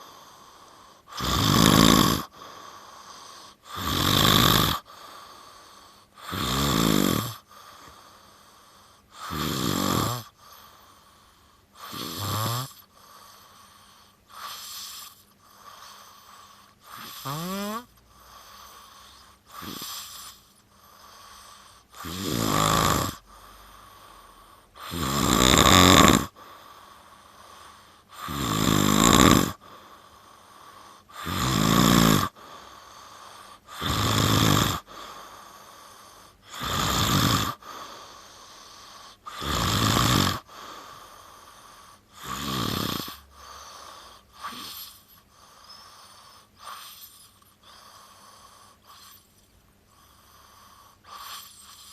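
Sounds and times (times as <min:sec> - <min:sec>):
person snoring: 0:00.0 - 0:49.3, 0:49.9 - 0:51.9.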